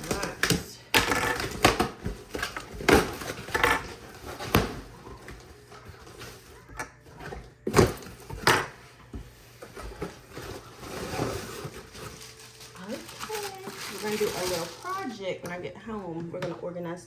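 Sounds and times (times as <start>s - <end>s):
packaging rustling: 9.8s - 15.3s.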